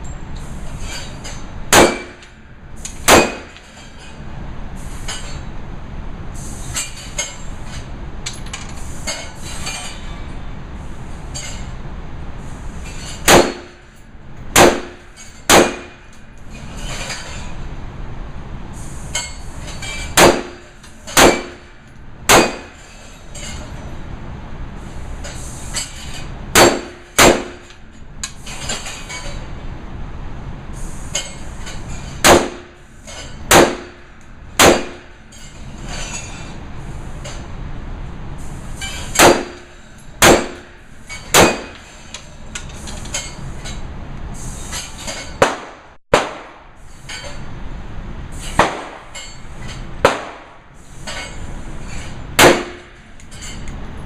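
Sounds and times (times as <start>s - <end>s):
rifle shots with metallic ring: 1.7s - 2.2s, 3.1s - 3.6s, 13.2s - 13.8s, 14.6s - 16.0s, 20.1s - 21.7s, 22.3s - 22.8s, 26.6s - 27.7s, 32.2s - 32.6s, 33.5s - 33.9s, 34.6s - 35.1s, 39.2s - 40.7s, 41.3s - 41.8s.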